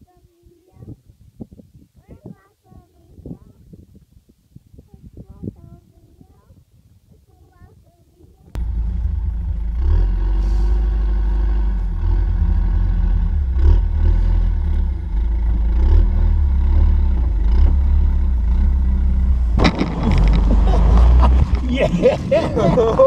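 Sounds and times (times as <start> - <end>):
excavator diesel engine rumbling: 8.6 - 23.0
knocks and clatters: 19.6 - 21.7.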